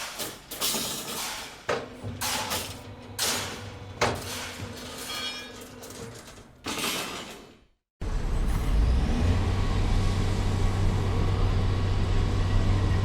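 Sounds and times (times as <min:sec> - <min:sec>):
heavy machinery engine humming: 0:08.0 - 0:13.0.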